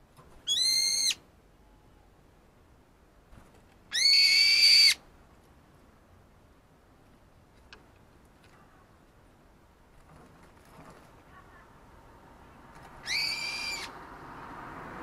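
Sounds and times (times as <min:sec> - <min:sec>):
bird giving shrill calls: 0:00.4 - 0:01.2, 0:03.9 - 0:05.0, 0:13.0 - 0:13.9.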